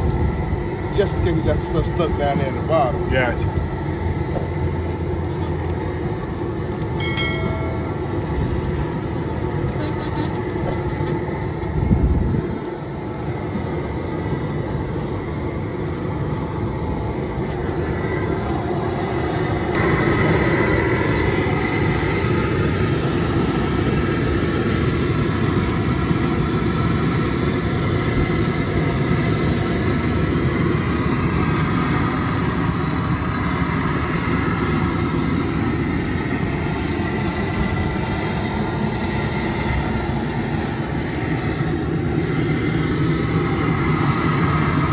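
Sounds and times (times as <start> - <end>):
propane burner rushing: 0.0 - 44.9.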